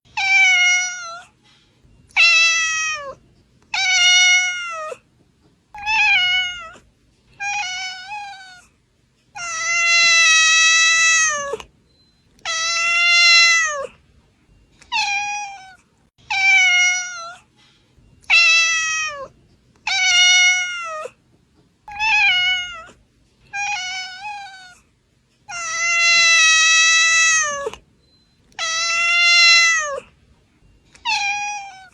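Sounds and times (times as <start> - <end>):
cat meowing: 0.1 - 1.3, 2.1 - 5.0, 5.8 - 8.7, 9.4 - 11.7, 12.4 - 14.0, 14.9 - 17.4, 18.2 - 21.2, 21.9 - 24.8, 25.5 - 27.8, 28.5 - 30.1, 31.0 - 31.9.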